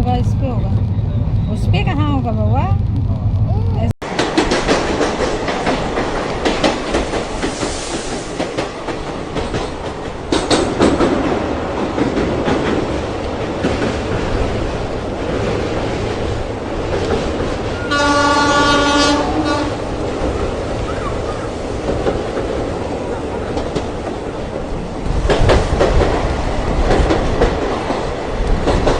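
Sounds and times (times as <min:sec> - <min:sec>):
train rumbling: 0:00.0 - 0:28.9
wheels clacking over rails: 0:04.0 - 0:28.9
train horn: 0:17.8 - 0:20.0.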